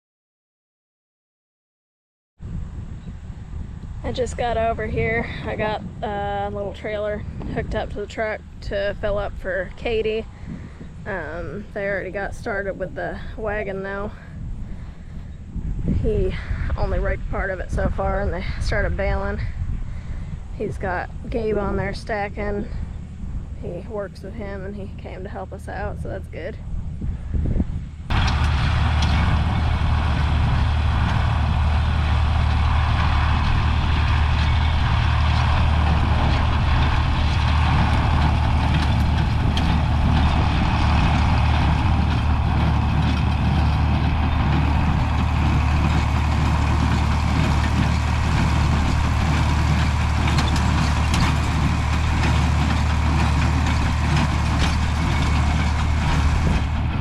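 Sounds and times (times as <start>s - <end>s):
tractor running: 2.6s - 26.4s, 28.1s - 57.0s
hay baler clicking: 28.1s - 57.0s.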